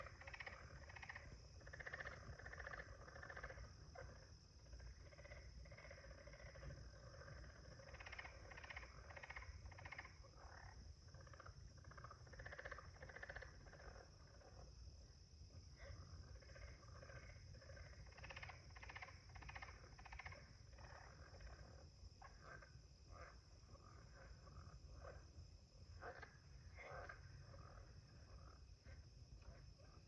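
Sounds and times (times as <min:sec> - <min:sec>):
croaking animal calls: 0:00.0 - 0:14.7, 0:15.7 - 0:30.0.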